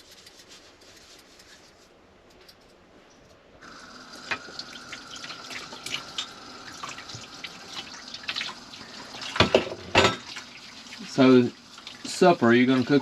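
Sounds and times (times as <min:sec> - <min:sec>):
tap water running into sink: 0:03.6 - 0:13.0
dishes clinking: 0:09.3 - 0:10.4.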